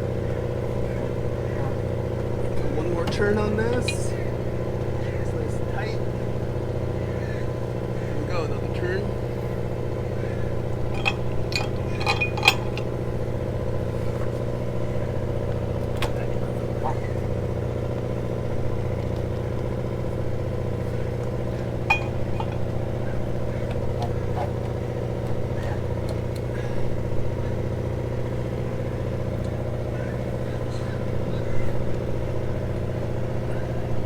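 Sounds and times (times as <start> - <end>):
engine droning: 0.0 - 34.0
tool clinking on metal: 2.7 - 4.3, 10.9 - 13.0, 21.5 - 24.8.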